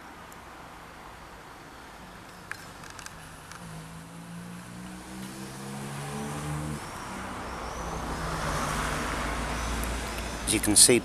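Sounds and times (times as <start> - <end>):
road traffic noise: 0.0 - 11.0
vehicle engine hum: 0.0 - 11.0.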